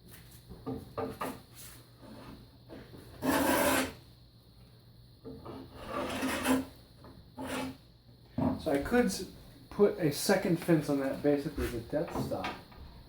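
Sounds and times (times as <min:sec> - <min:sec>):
hand plane shaving wood: 0:03.2 - 0:04.0, 0:05.7 - 0:06.7, 0:07.4 - 0:07.8.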